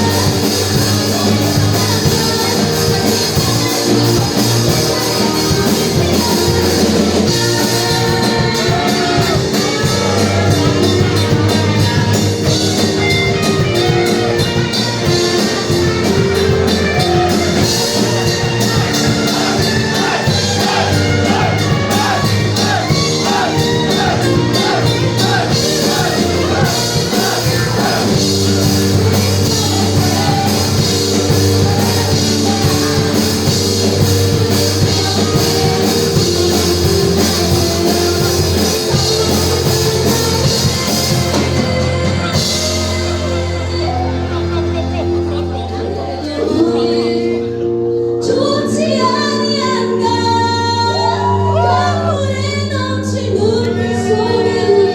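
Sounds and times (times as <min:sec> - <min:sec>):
steady drum beat: 0:00.0 - 0:43.6
person singing: 0:00.0 - 0:54.9
rock band playing live: 0:00.0 - 0:54.9.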